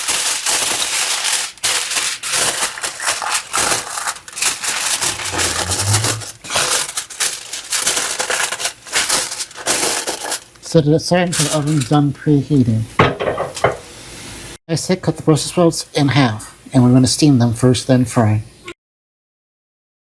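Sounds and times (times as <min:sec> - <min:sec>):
aluminium foil crinkling: 0:00.0 - 0:10.7, 0:11.3 - 0:12.1.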